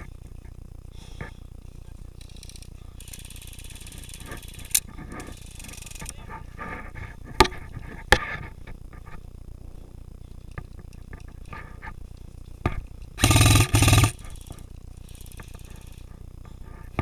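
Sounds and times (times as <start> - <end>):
high fast buzzing rattle: 0.0 - 17.0
airsoft gun shots: 13.2 - 14.4.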